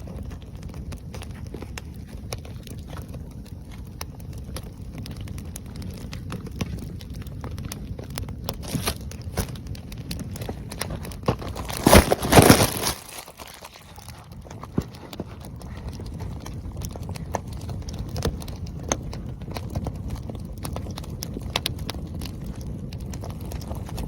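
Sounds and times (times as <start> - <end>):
firewood crackling and popping: 0.0 - 24.0
rush of flames: 0.0 - 24.0
rustling: 10.3 - 19.1.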